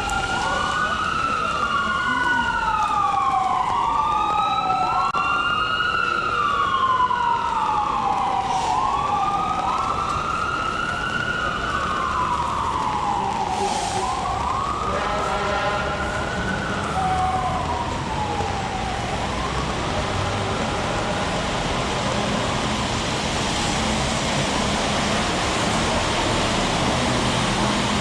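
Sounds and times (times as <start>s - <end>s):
emergency sirens wailing: 0.0s - 28.0s
heavy rain hissing: 11.6s - 28.0s.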